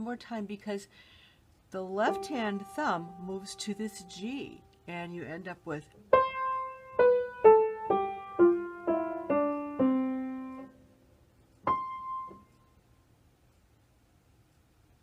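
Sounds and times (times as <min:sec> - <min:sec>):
piano single notes: 0:06.1 - 0:10.8, 0:11.6 - 0:12.6.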